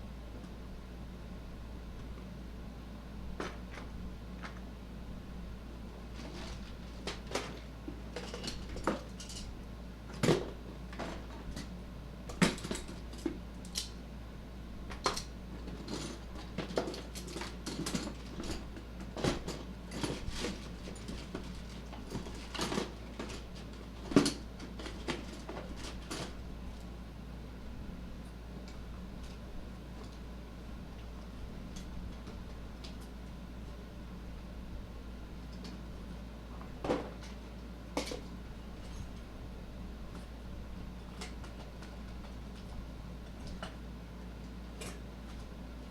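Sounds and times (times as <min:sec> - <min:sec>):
steady low hum: 0:00.0 - 0:45.9.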